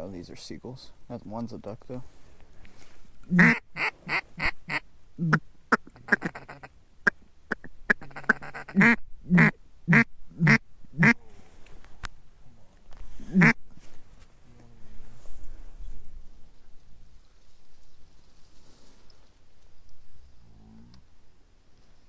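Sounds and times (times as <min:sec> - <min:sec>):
duck quacking: 0:03.3 - 0:11.2, 0:13.3 - 0:13.6.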